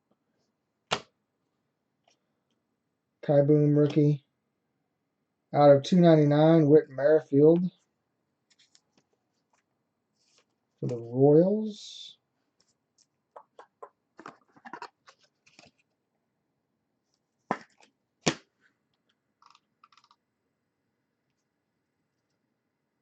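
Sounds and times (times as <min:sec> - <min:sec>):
cards and wrappers rustling: 0:14.2 - 0:15.9.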